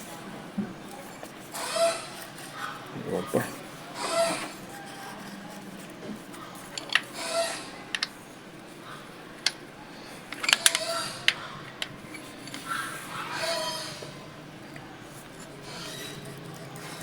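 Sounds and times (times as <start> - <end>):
metal tools clinking: 9.4 - 13.6.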